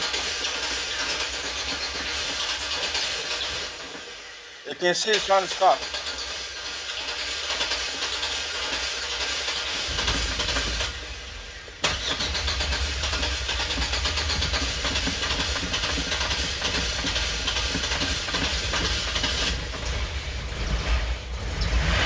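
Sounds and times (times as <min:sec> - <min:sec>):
starter motor cranking: 0:00.0 - 0:04.0, 0:05.1 - 0:20.0
engine running: 0:00.0 - 0:22.0.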